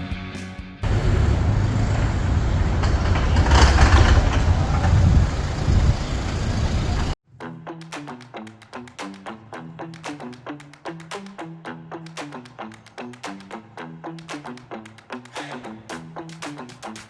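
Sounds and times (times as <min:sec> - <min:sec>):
large vehicle engine rumbling: 0:00.8 - 0:07.2.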